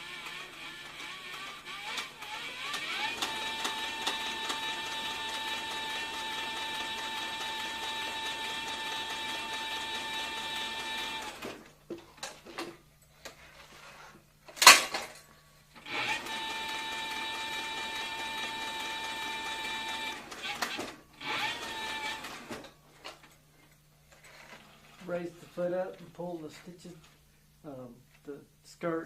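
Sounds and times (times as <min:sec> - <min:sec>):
sewing machine motor whine: 0:00.0 - 0:11.7, 0:15.8 - 0:22.8.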